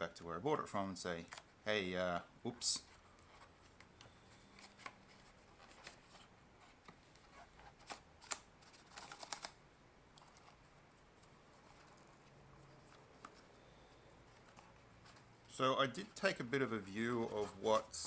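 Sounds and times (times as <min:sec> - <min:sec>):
packaging clicks and rustles: 0:07.2 - 0:09.6.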